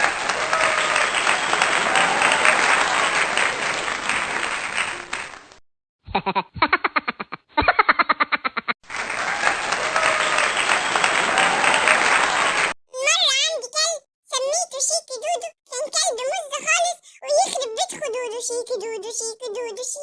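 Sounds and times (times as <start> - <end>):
crowd applause: 0.0 - 5.6, 8.8 - 12.8.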